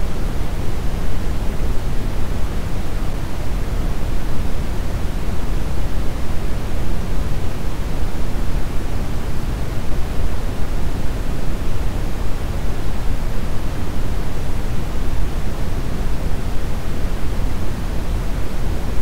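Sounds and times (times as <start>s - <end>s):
brown noise hiss: 0.0s - 19.0s.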